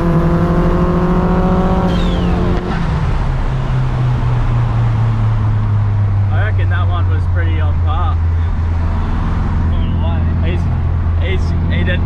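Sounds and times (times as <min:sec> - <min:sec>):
car engine running hard: 0:00.0 - 0:12.0
brief falling whistle: 0:01.9 - 0:02.5.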